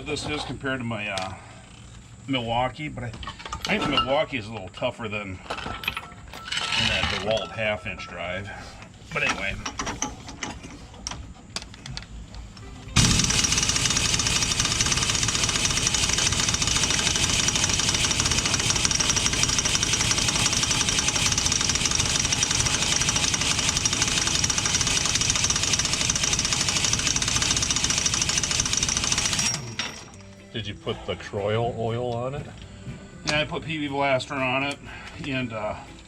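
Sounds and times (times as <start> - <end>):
impact wrench hammering: 13.0 - 30.2.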